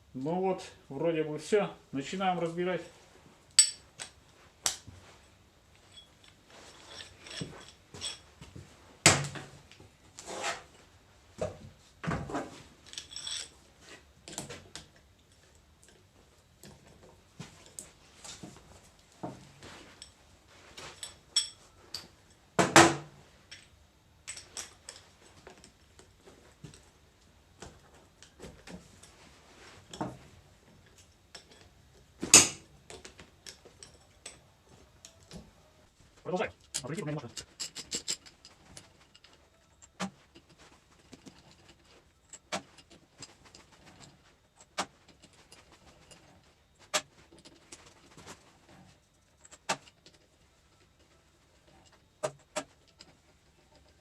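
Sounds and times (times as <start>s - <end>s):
metal tools clinking and knocking: 3.6s - 4.2s, 5.8s - 8.3s, 12.8s - 13.6s, 20.8s - 22.4s, 30.8s - 35.4s, 36.5s - 54.0s.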